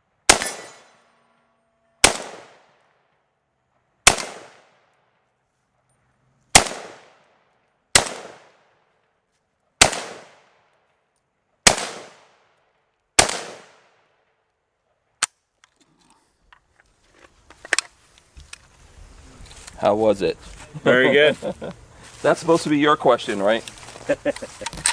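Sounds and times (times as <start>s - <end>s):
rifle shots: 0.3s - 1.0s, 2.0s - 2.8s, 4.0s - 4.8s, 6.5s - 7.2s, 7.9s - 8.7s, 9.8s - 10.6s, 11.6s - 12.4s, 13.2s - 14.0s
gun handling clicks: 23.6s - 24.9s.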